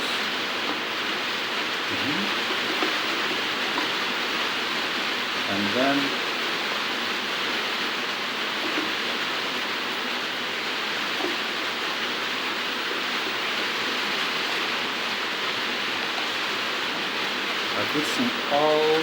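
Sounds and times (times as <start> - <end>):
rain hissing: 0.0 - 19.0.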